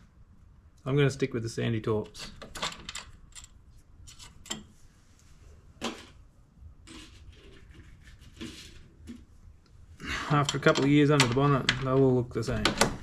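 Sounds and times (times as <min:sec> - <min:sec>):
metal parts knocking and clinking: 0:02.3 - 0:04.6, 0:10.4 - 0:13.0.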